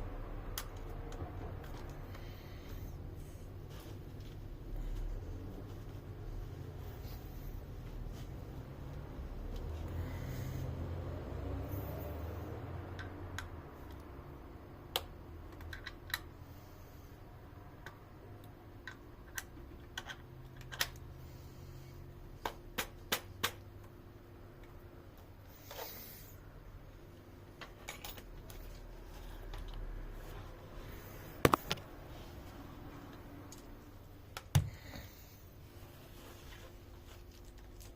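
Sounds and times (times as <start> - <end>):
sharp clicks and knocks of tools: 14.9 - 16.4, 17.8 - 21.1.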